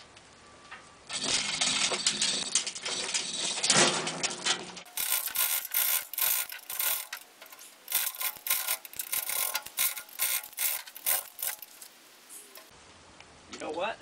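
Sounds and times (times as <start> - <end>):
chain rattling: 1.1 - 11.9
ratchet clicking: 4.8 - 11.9.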